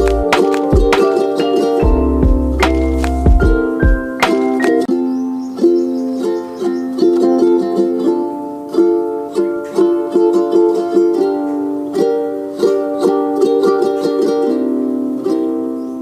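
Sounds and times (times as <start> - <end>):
plucked string instrumental music: 0.0 - 16.0.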